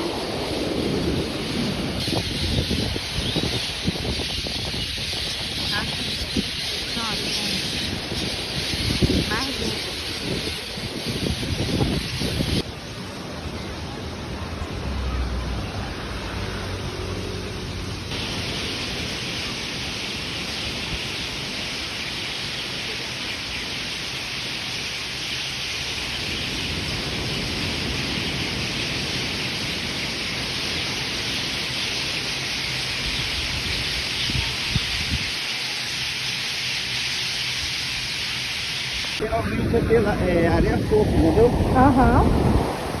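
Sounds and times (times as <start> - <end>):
water rushing: 39.1 - 43.0.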